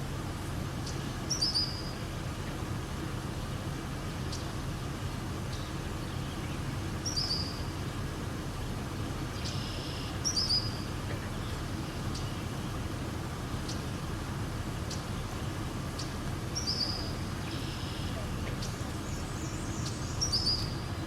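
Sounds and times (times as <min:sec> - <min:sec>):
steady low rumble: 0:07.7 - 0:21.0
birds giving short high calls: 0:16.0 - 0:21.0.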